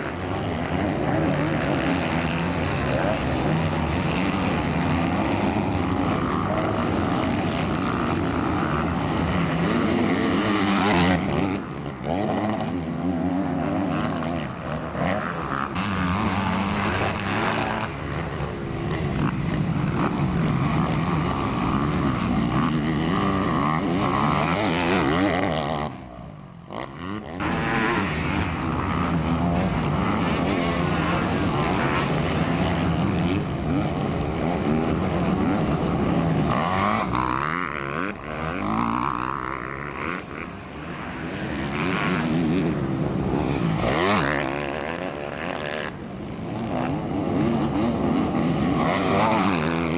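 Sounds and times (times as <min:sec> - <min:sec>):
motocross engines revving: 0:00.0 - 0:49.9.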